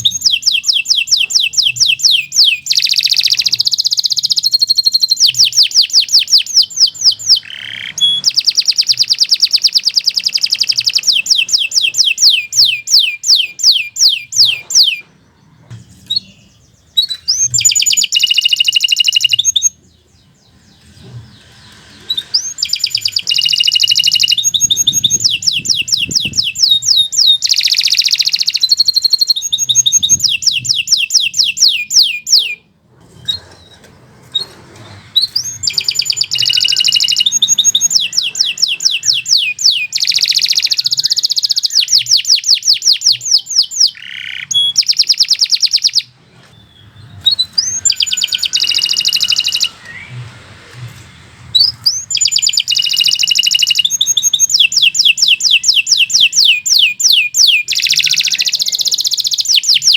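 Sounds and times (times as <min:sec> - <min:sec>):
canary trilling song: 0:00.0 - 0:50.5, 0:51.2 - 0:59.9.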